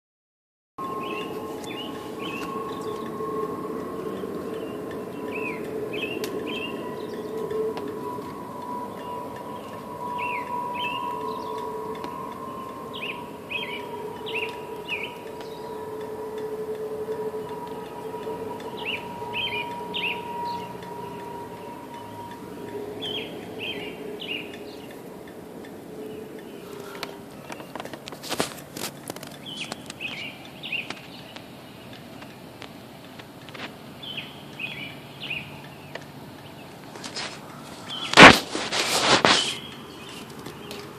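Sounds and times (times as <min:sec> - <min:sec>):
drone of two held tones: 0:00.8 - 0:27.5
birds chirping: 0:00.8 - 0:38.6, 0:39.2 - 0:40.9
rushing background noise: 0:00.8 - 0:40.9.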